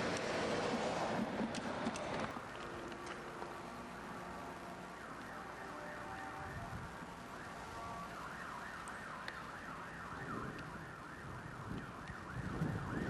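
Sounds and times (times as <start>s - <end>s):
siren rising and falling: 3.9s - 13.0s
wind rumble on microphone: 6.2s - 8.9s, 9.7s - 13.0s.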